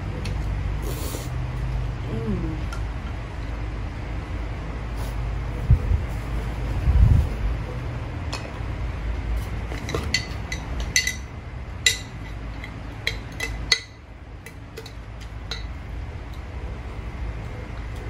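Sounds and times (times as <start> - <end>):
low steady rumble: 0.0 - 18.0
utensils clinking against bowl: 9.7 - 15.8.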